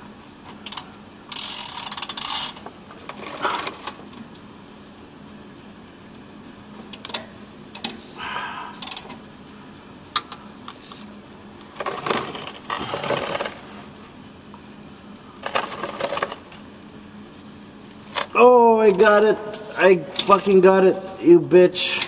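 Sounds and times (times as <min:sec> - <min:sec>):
ratchet wrench clicking: 0:00.6 - 0:02.6, 0:08.8 - 0:09.1.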